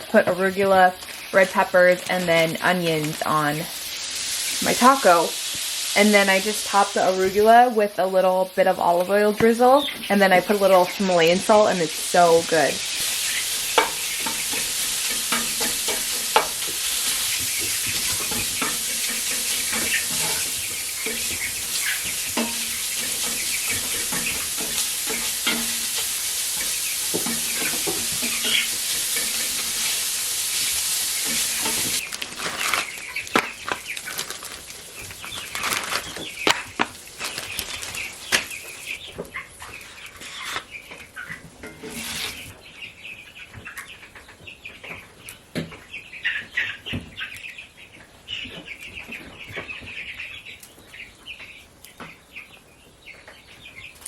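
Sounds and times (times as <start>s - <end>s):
food sizzling in a frying pan: 0.0s - 42.6s
chickens clucking: 0.0s - 54.0s
utensil clicking against pan: 13.2s - 29.9s
taps and rustling: 26.6s - 28.6s.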